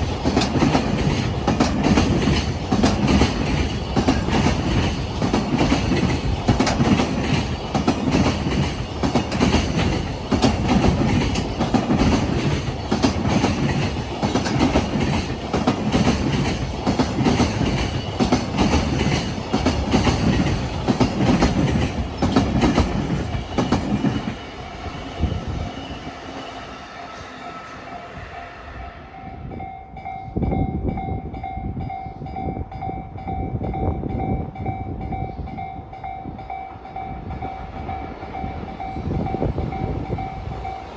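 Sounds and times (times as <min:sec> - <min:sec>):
freight train wheels clattering: 0:00.0 - 0:26.3.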